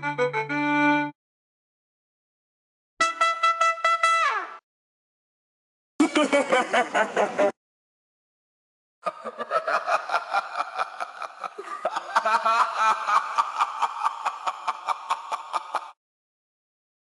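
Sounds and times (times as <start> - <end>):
laughter sound effect: 6.0 - 7.6, 9.0 - 16.0.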